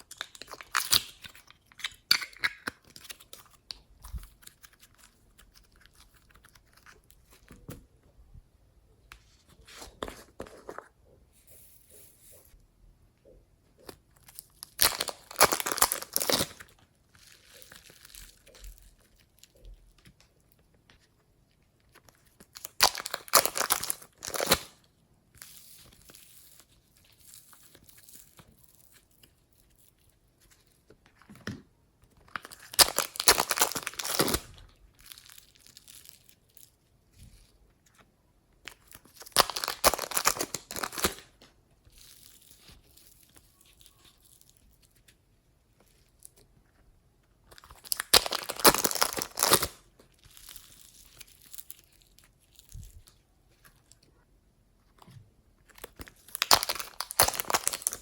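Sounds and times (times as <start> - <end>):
soft handling sounds: 3.0 - 14.6.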